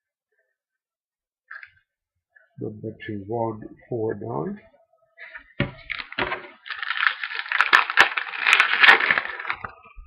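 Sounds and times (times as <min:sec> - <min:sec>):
plastic packaging crinkling: 0:05.7 - 0:09.9.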